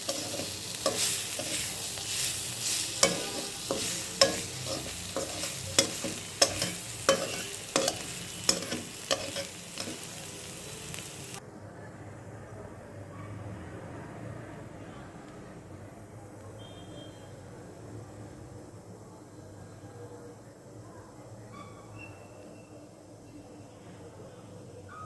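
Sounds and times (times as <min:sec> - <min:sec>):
spatula clacking against pan: 0:00.0 - 0:10.3
greens sizzling in a pan: 0:00.0 - 0:11.4.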